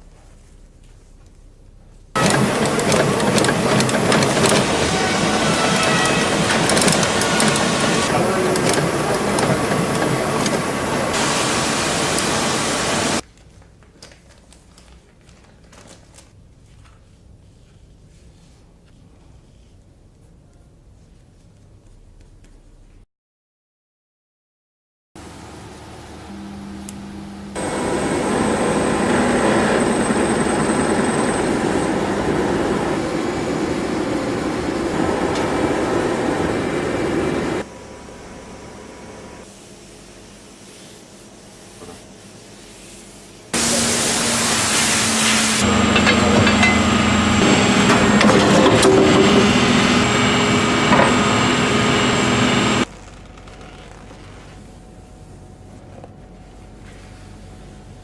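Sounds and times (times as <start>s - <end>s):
workshop machine rushing: 2.2s - 13.2s, 27.6s - 37.7s, 43.6s - 52.9s.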